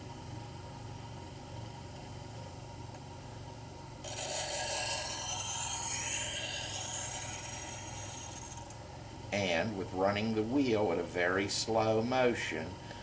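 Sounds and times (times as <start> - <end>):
low steady hum: 0.0 - 13.0
blade scraping on grinding wheel: 4.0 - 8.8.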